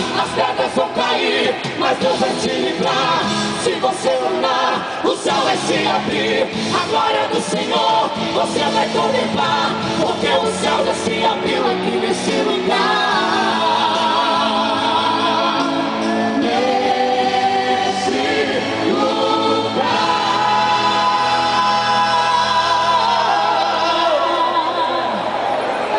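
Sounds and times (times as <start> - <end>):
vocal group singing gospel: 0.0 - 25.9.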